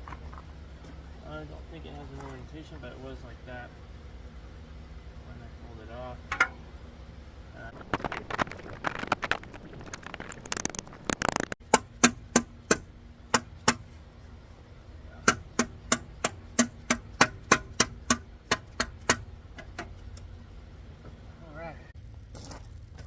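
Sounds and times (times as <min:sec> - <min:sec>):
sharp metallic knocks: 0:11.6 - 0:13.8, 0:15.2 - 0:20.0.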